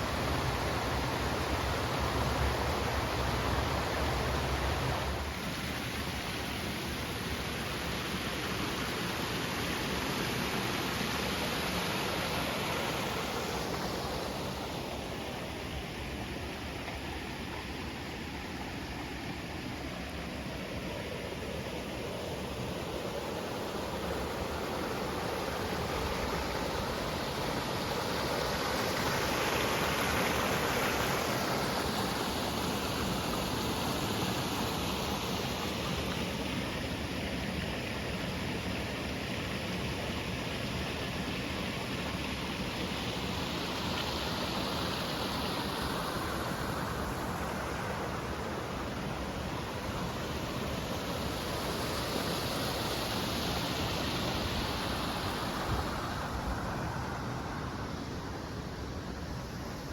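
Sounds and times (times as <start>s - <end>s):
water flowing: 0.0s - 38.1s.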